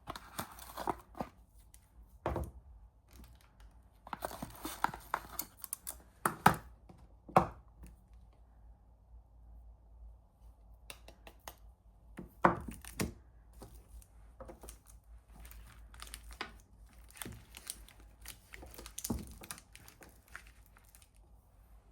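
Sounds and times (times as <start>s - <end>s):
wrapper crinkling and tearing: 4.1s - 6.0s, 13.6s - 21.2s.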